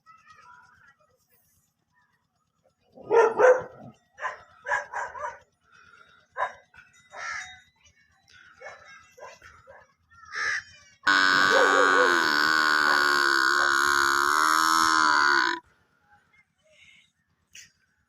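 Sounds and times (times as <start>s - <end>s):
dog barking and yelping: 3.0s - 5.4s.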